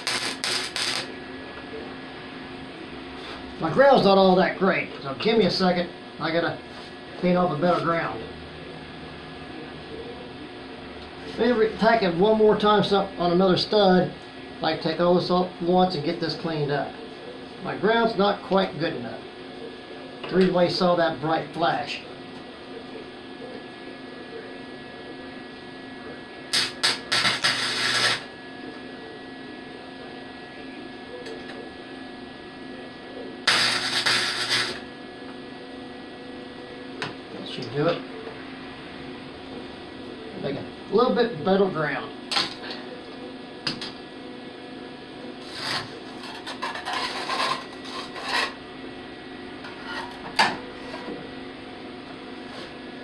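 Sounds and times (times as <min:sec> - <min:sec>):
welding arc crackle: 0:00.0 - 0:01.2, 0:26.5 - 0:28.4, 0:33.4 - 0:34.9, 0:42.3 - 0:42.6, 0:45.4 - 0:48.1
welder hum: 0:00.0 - 0:04.8, 0:26.0 - 0:37.0, 0:42.0 - 0:53.0
metal being scraped by hand: 0:45.4 - 0:48.6, 0:49.7 - 0:50.2.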